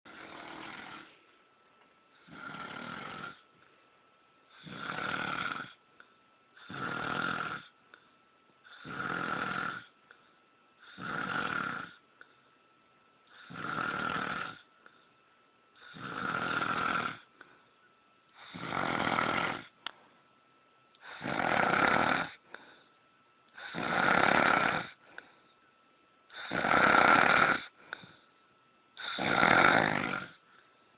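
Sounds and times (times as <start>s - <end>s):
man snoring: 0.1s - 1.1s, 2.2s - 3.4s, 4.5s - 5.8s, 6.6s - 7.7s, 8.7s - 9.9s, 10.8s - 12.0s, 13.4s - 14.7s, 15.8s - 17.3s, 18.4s - 19.8s, 21.0s - 22.4s, 23.6s - 25.0s, 26.3s - 28.1s, 29.0s - 30.4s.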